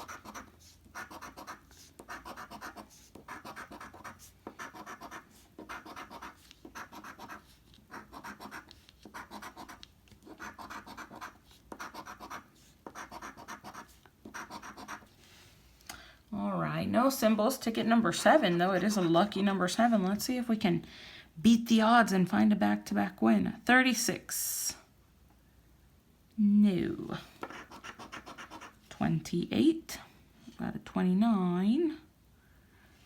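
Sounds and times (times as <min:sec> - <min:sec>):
scratching a scratch-off ticket: 0:00.0 - 0:15.1, 0:18.1 - 0:19.4, 0:27.4 - 0:28.8.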